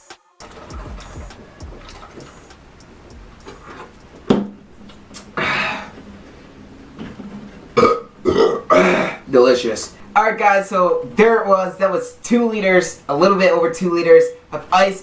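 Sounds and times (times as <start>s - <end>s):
man exhaling: 5.4s - 6.0s
man burping: 7.8s - 9.3s.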